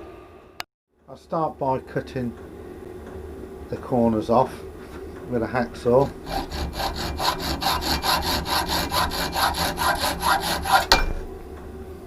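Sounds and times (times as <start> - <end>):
hacksaw cutting metal: 6.0 - 11.3.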